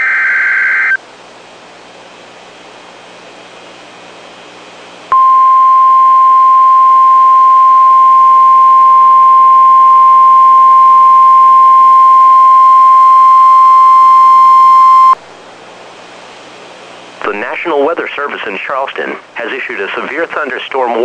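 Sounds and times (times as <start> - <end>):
faint radio hiss: 15.7 - 21.0.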